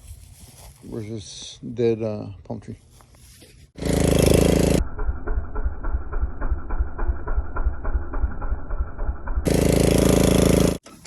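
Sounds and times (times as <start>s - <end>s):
vehicle engine running low speed: 3.8s - 10.8s.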